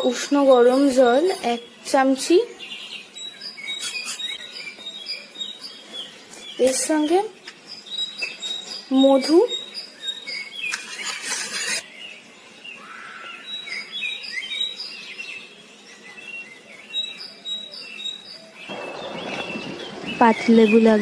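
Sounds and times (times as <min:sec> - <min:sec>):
small birds chirping: 0:00.0 - 0:21.0
short scraping noise: 0:10.7 - 0:11.8.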